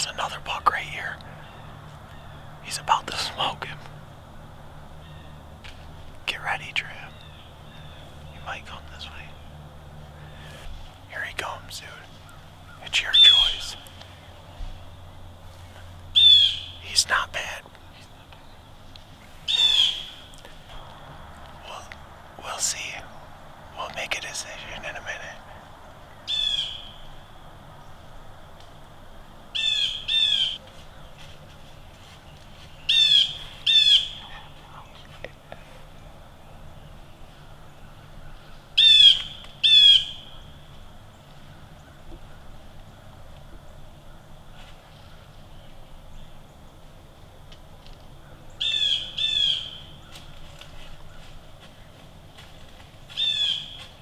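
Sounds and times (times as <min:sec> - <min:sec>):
quiet woodland background: 0:00.0 - 0:54.0
crow cawing: 0:01.2 - 0:02.7, 0:04.0 - 0:05.6, 0:16.2 - 0:16.8, 0:19.5 - 0:20.3
bird harsh downward calls: 0:10.2 - 0:13.9, 0:16.2 - 0:17.6, 0:19.5 - 0:20.3, 0:26.3 - 0:27.2, 0:32.9 - 0:34.5.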